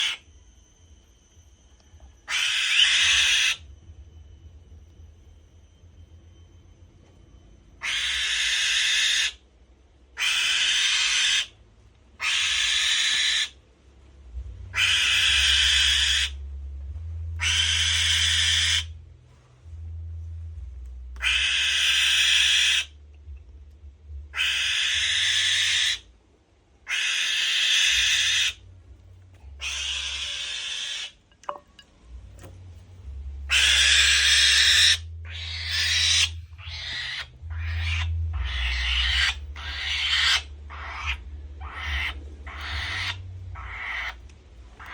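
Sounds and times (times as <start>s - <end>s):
falcon hoarse screeches: 2.2s - 3.7s, 7.8s - 9.4s, 10.2s - 11.6s, 12.2s - 13.6s, 14.7s - 16.4s, 17.4s - 19.0s, 21.2s - 23.0s, 24.3s - 26.1s, 26.9s - 28.6s, 29.6s - 31.2s, 33.5s - 44.2s.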